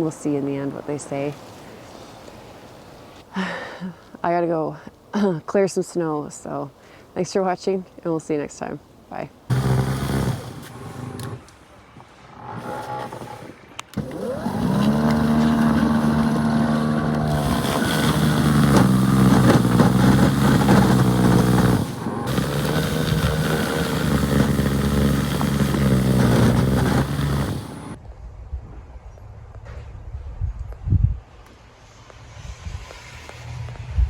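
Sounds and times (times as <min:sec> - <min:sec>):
engine running steadily: 0:09.5 - 0:11.4, 0:13.9 - 0:28.0.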